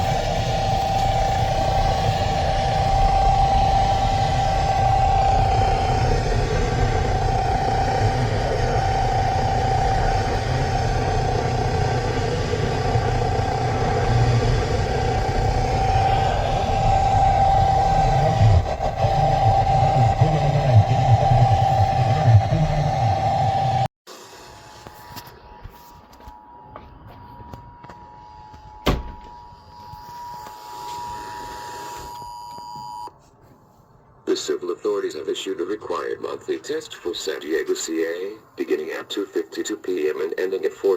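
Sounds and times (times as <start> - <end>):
loud low rumbling noise: 0.0 - 23.9
steady single-pitched tone: 0.0 - 23.9.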